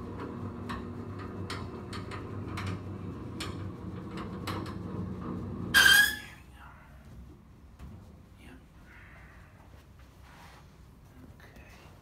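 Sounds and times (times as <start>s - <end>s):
loud high-pitched squeak: 5.7s - 6.5s.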